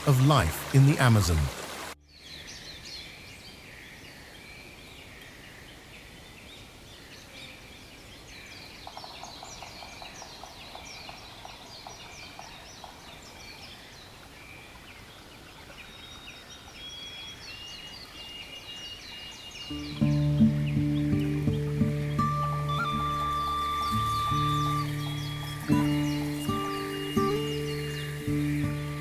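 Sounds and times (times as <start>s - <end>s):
chorus of birds chirping: 0.0s - 29.0s
thin held whistle: 22.3s - 27.7s.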